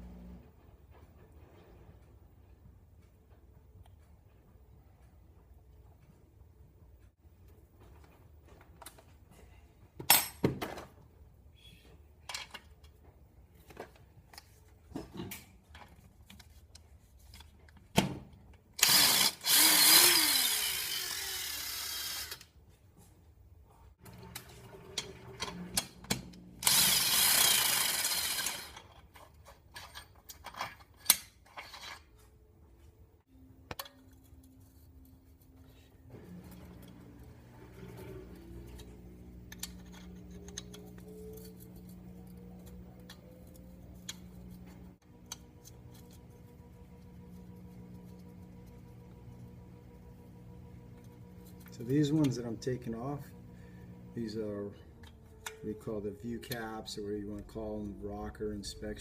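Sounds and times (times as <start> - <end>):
clinks of tools and metal parts: 10.0 - 11.0, 25.0 - 32.3, 33.4 - 35.9, 37.9 - 46.2
power tool running: 18.8 - 22.5, 24.0 - 28.8, 36.1 - 56.0.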